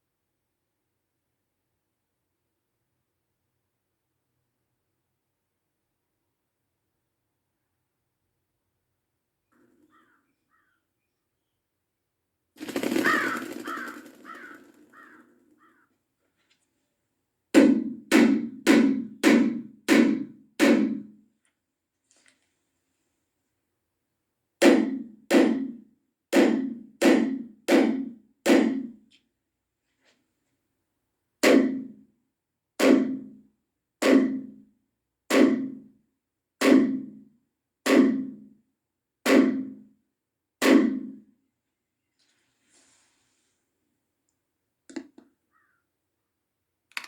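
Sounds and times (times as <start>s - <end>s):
crow cawing: 9.8s - 10.8s, 12.6s - 16.0s, 45.5s - 45.8s
hammer driving a nail: 17.6s - 21.1s, 24.6s - 28.9s, 31.4s - 31.9s, 32.8s - 33.3s, 34.0s - 34.6s, 35.3s - 35.8s, 36.6s - 37.2s, 37.9s - 38.4s, 39.3s - 39.8s, 40.6s - 41.2s.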